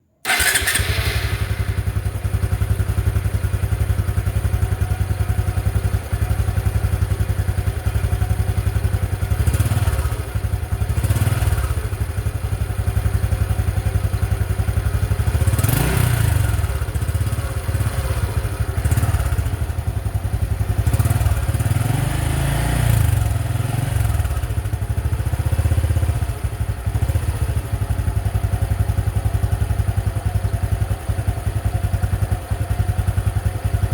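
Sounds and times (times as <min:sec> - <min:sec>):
engine revving: 0:00.2 - 0:02.6, 0:15.3 - 0:19.4, 0:20.8 - 0:24.4
motorcycle engine idling: 0:00.2 - 0:33.9.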